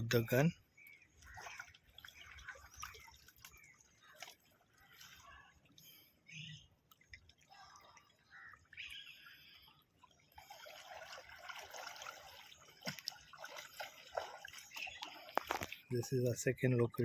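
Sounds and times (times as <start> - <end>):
sea water splashing and trickling: 0.0 - 17.0.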